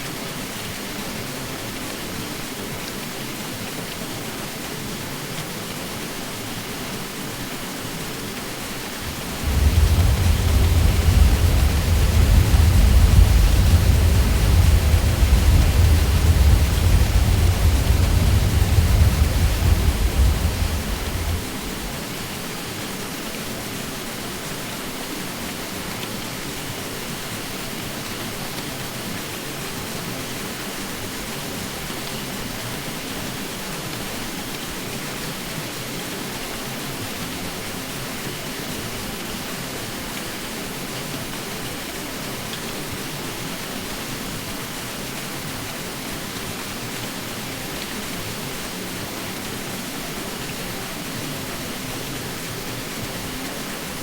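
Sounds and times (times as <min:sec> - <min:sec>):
ceiling fan whooshing hum: 0:09.0 - 0:22.0.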